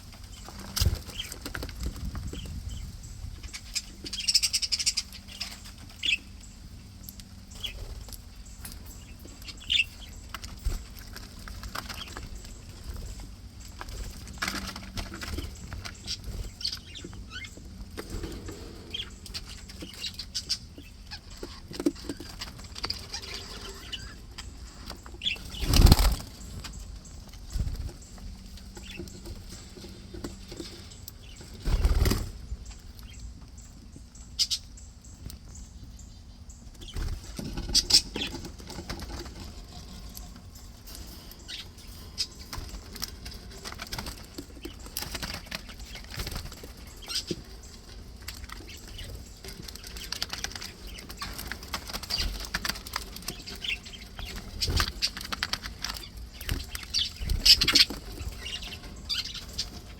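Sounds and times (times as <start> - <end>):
budgies flapping wings: 9.7 - 20.6, 25.0 - 28.0, 28.8 - 32.4, 40.9 - 59.9.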